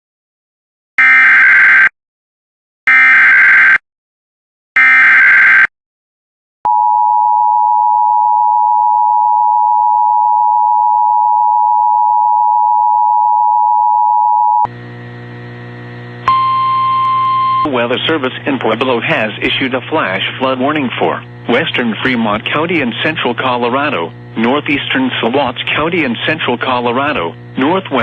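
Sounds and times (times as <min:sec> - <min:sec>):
steady attention tone: 0:14.2 - 0:28.0.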